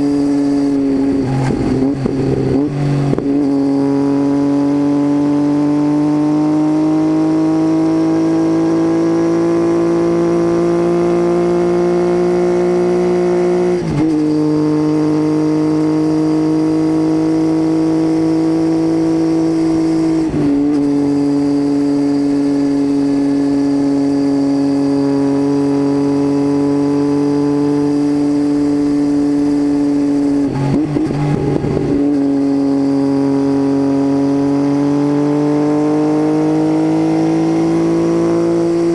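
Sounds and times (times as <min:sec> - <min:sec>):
motorcycle engine droning: 0:00.0 - 0:38.9.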